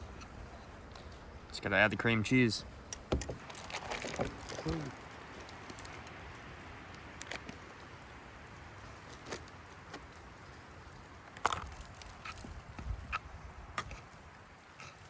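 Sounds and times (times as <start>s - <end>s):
cooking gear clicks and knocks: 2.8s - 6.2s, 11.2s - 15.0s.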